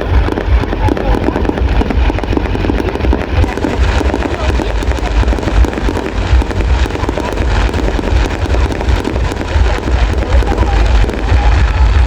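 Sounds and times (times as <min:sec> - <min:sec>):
fireworks crackling and popping: 0:00.0 - 0:12.0
heavy low rumble: 0:00.0 - 0:12.0.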